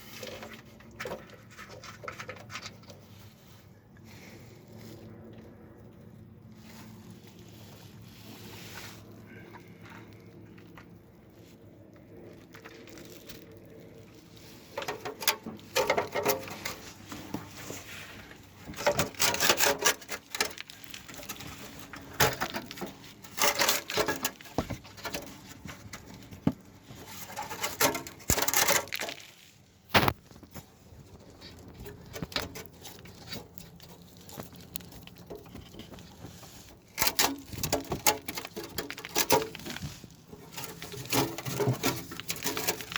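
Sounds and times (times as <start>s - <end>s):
tools scraping and clattering: 0.0s - 3.4s, 14.4s - 30.7s, 31.4s - 42.9s.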